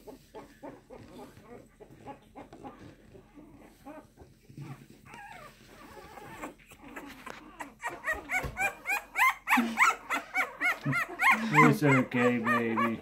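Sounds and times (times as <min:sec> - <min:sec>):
puppy crying in high squeals: 0:05.1 - 0:13.0.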